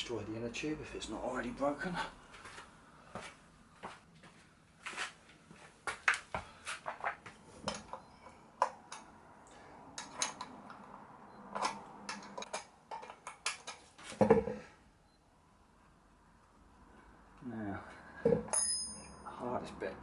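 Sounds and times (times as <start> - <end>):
metal hand tools clinking: 18.5 - 19.3.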